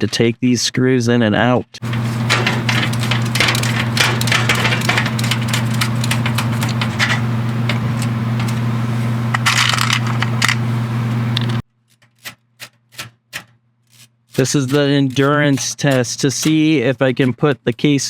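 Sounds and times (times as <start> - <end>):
small metal clicks and scrapes: 1.8 - 10.6, 11.4 - 18.0
steady low hum: 1.8 - 11.6.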